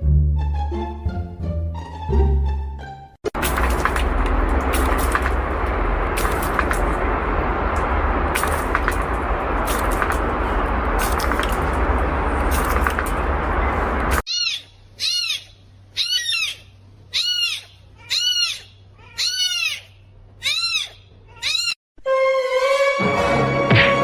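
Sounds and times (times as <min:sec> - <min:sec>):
loud rushing noise with clicks: 0:03.3 - 0:14.2
cat meowing: 0:17.2 - 0:19.8, 0:20.4 - 0:21.8.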